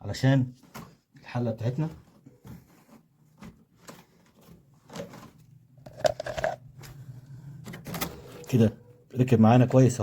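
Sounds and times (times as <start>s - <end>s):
plastic parts clicking and knocking: 2.1s - 7.0s.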